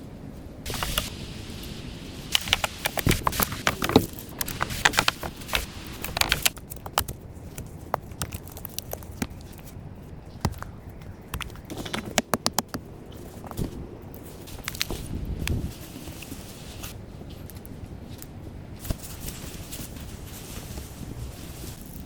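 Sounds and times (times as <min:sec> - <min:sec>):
rapid irregular clicks and knocks: 0:00.7 - 0:01.1, 0:02.3 - 0:16.3.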